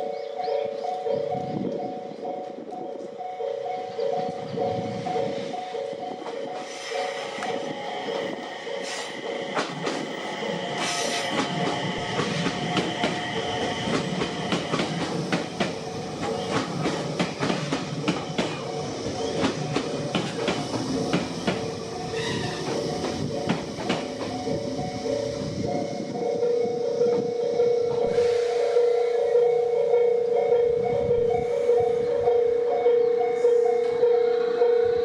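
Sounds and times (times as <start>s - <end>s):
level crossing alarm ringing: 0.0s - 35.0s
train wheels clacking over rail joints: 8.8s - 25.1s.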